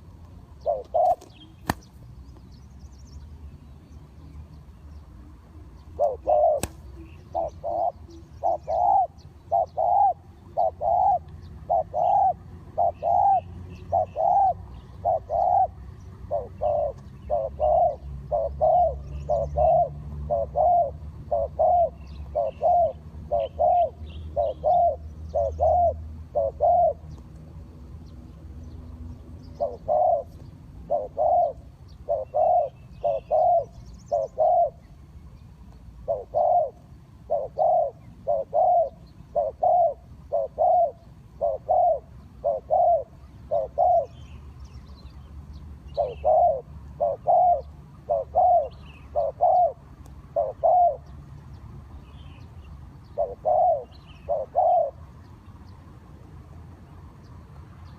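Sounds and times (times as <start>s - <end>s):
small birds chirping: 0.0s - 56.0s
dove cooing: 0.5s - 1.8s, 5.8s - 27.1s, 29.5s - 34.9s, 36.0s - 44.2s, 45.9s - 51.1s, 53.0s - 55.0s.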